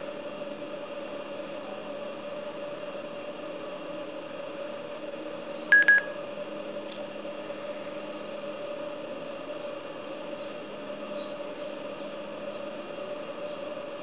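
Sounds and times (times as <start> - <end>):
faint hum and hiss: 0.0 - 14.0
short electronic beeps: 5.7 - 6.2.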